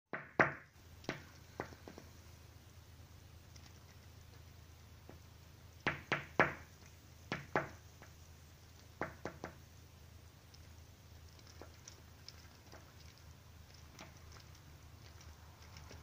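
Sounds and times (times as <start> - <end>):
bird pecking at window glass: 0.2 - 2.2, 5.0 - 9.7, 10.5 - 16.0.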